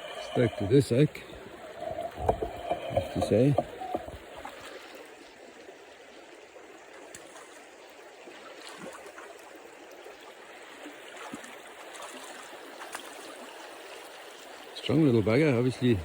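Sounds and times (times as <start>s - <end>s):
faint ticks: 0.0s - 4.8s
river water rushing and rippling: 0.0s - 16.0s.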